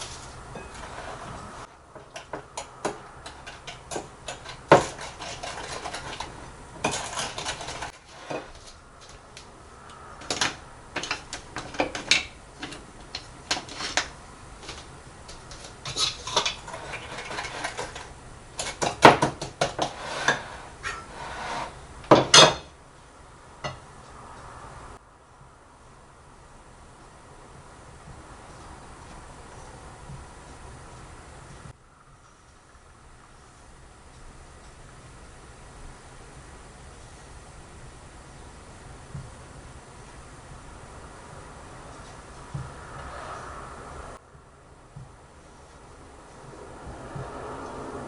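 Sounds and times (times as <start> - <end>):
dishes and cutlery clinking: 2.0 - 8.6.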